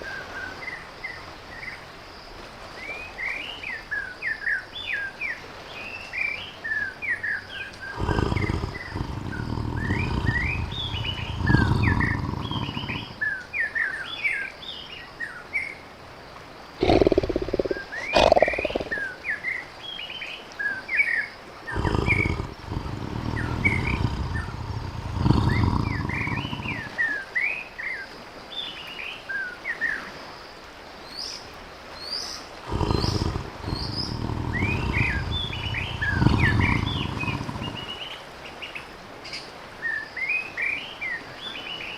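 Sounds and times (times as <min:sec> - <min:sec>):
small birds chirping: 0:07.4 - 0:15.0, 0:16.7 - 0:20.0, 0:21.6 - 0:27.2, 0:32.1 - 0:38.2
tiger calling: 0:07.9 - 0:13.3, 0:16.8 - 0:19.1, 0:21.7 - 0:27.0, 0:32.6 - 0:38.0.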